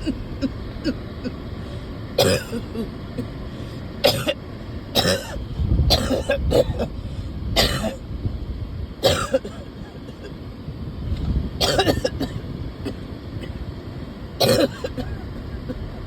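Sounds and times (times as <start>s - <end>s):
person coughing: 2.2s - 2.9s, 4.0s - 4.4s, 5.0s - 6.9s, 7.6s - 8.0s, 11.6s - 12.4s, 14.4s - 15.2s.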